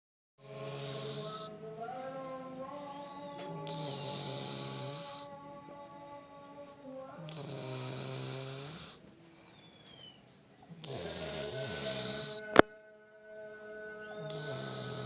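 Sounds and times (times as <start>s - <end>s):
person snoring: 0.4s - 9.0s, 10.7s - 12.7s, 14.2s - 15.0s.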